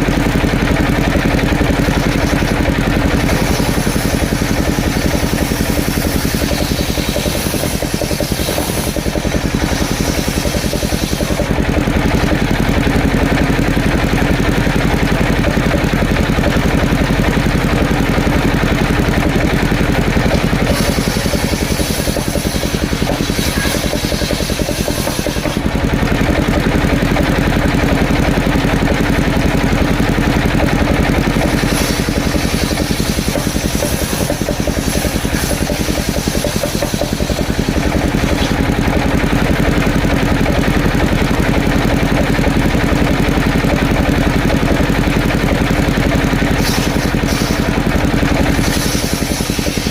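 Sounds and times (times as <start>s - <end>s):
engine running: 0.0s - 49.9s
hiss: 3.2s - 11.4s, 20.6s - 25.6s, 31.5s - 38.5s, 46.5s - 47.8s, 48.5s - 49.9s.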